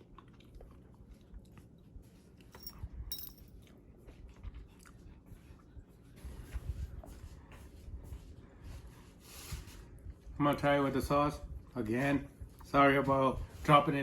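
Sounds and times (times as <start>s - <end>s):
person chewing food: 0.0s - 2.1s.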